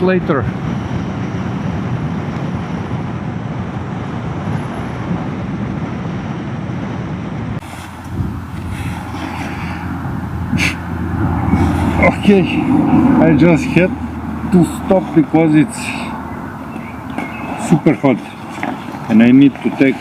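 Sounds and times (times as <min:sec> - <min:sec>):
wind rush on microphone: 0:00.0 - 0:20.0
motorcycle engine: 0:07.9 - 0:17.8.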